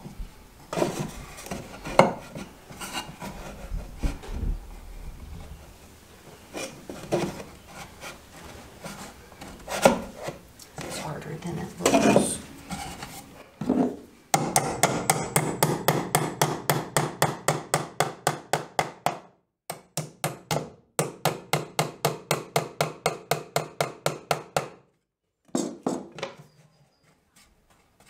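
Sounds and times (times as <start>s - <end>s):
hammer blows nailing into wood: 14.3s - 24.8s.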